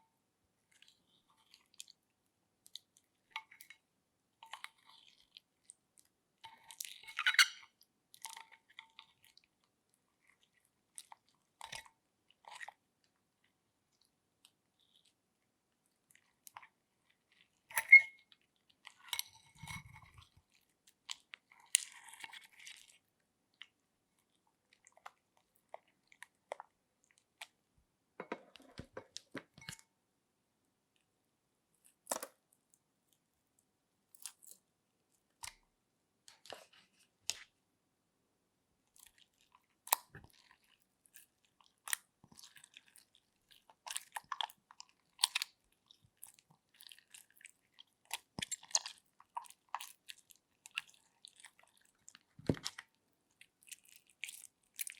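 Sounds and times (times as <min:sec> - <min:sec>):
slime squelching and crackling: 0:38.9 - 0:54.9.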